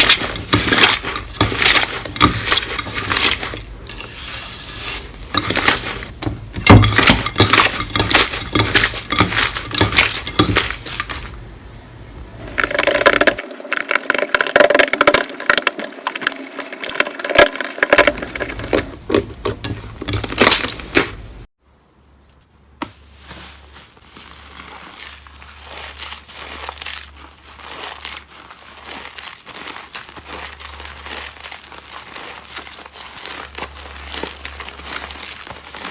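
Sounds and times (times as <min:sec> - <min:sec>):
slime crackling and popping: 0:24.2 - 0:35.9.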